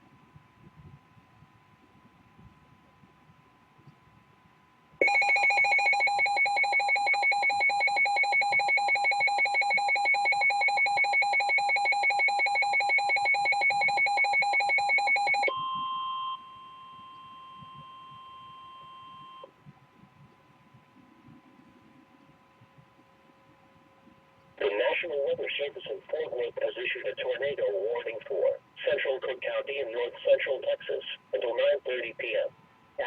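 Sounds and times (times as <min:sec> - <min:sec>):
electronic alarm beeping rapidly: 0:05.0 - 0:16.4
steady warning tone: 0:05.0 - 0:19.5.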